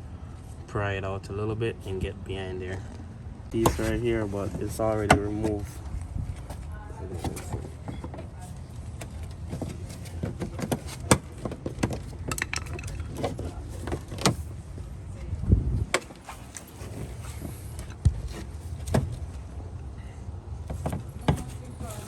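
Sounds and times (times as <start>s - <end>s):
low rumble: 14.6s - 15.9s.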